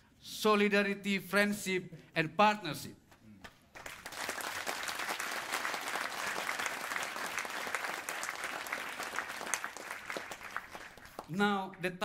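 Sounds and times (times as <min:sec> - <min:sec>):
audience applauding: 0:03.7 - 0:11.3.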